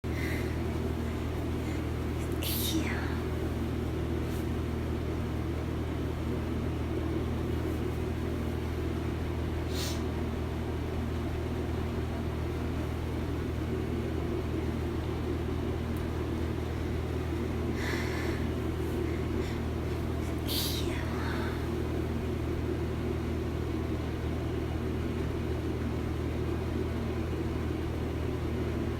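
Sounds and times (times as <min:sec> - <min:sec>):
steady low hum: 0:00.0 - 0:28.9
person sniffling: 0:09.7 - 0:10.1.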